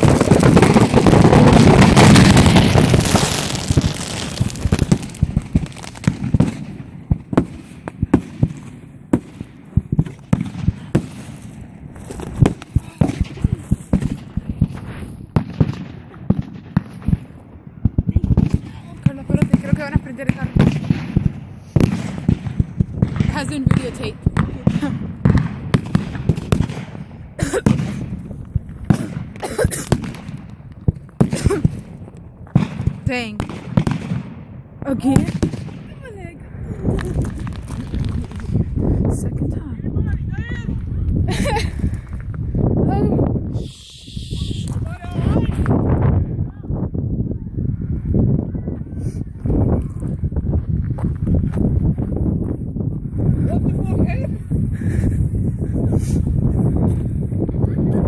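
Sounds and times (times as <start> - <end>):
firecracker pops and cracks: 0.0 - 34.4, 35.0 - 35.9, 36.9 - 38.7
fireworks rushing: 0.0 - 46.5.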